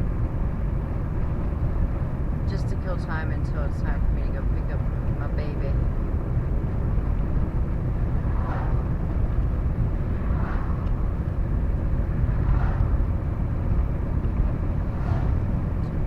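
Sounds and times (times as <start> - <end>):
car road and engine rumble: 0.0 - 16.0
faint swish: 8.3 - 8.9, 10.2 - 11.0, 12.3 - 13.0.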